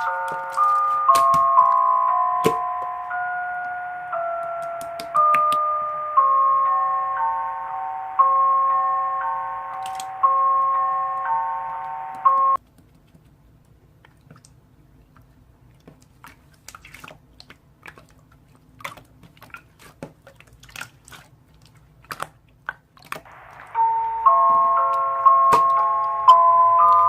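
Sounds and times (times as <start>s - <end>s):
glockenspiel-like music: 0.0s - 12.6s, 23.3s - 27.0s.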